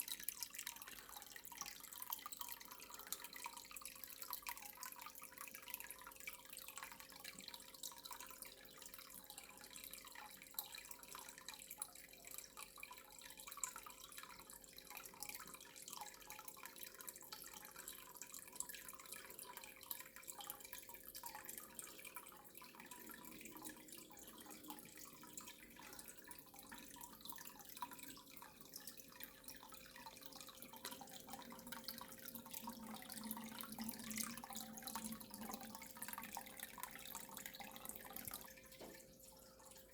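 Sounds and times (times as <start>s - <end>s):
tap water dripping into sink: 0.0s - 39.9s
thin steady hum: 18.3s - 39.9s.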